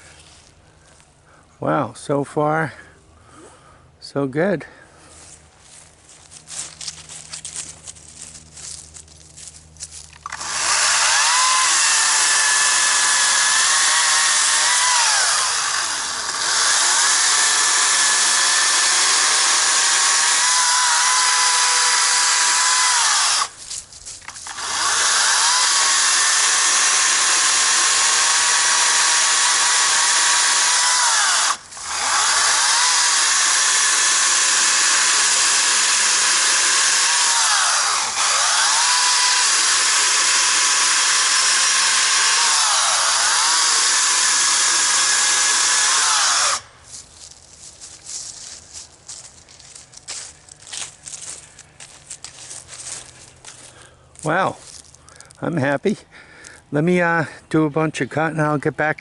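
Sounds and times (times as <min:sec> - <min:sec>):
electric chainsaw cutting log: 0:09.9 - 0:46.7.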